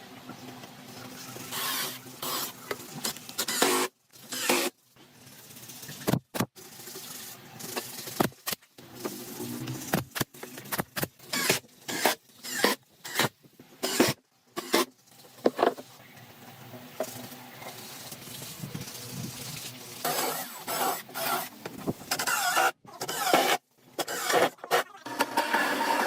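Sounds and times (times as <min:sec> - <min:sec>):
hand tool scraping wood: 0:20.0 - 0:26.0.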